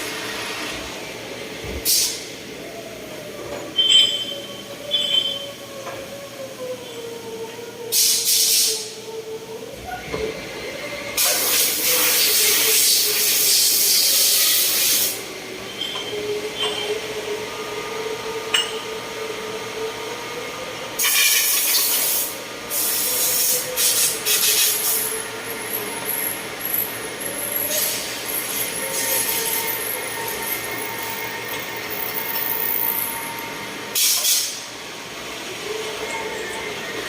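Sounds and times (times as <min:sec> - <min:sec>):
machinery humming: 0:08.8 - 0:37.0.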